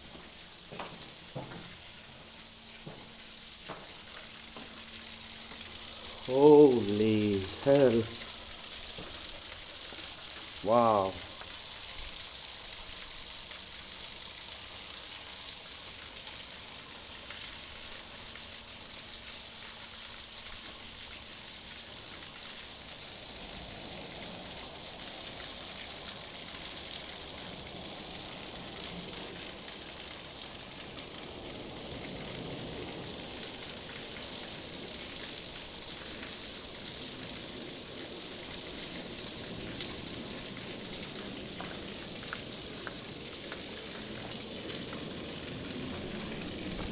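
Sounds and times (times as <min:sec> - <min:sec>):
waterfall rushing: 0:05.9 - 0:08.2, 0:10.6 - 0:11.4.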